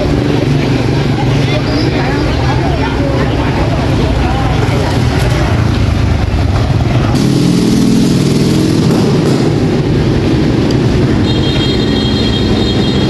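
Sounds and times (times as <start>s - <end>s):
motor engine droning: 5.5s - 11.2s.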